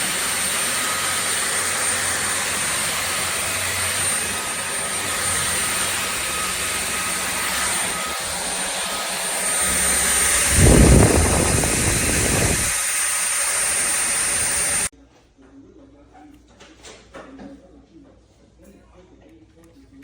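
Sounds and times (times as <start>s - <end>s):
stick vacuum whirring: 0.0s - 14.9s.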